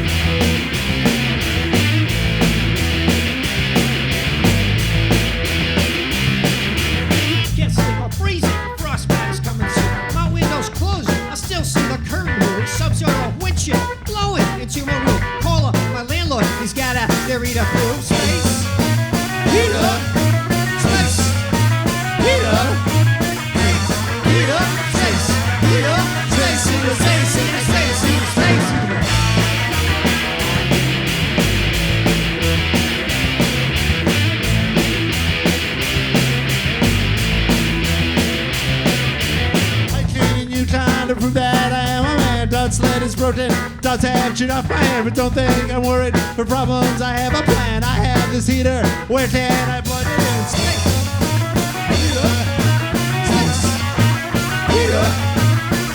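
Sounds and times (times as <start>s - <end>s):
drum beat: 0.0s - 11.6s, 15.6s - 41.7s, 50.0s - 55.9s
bass line: 0.0s - 55.9s
lead melody: 17.9s - 39.9s, 50.5s - 55.9s.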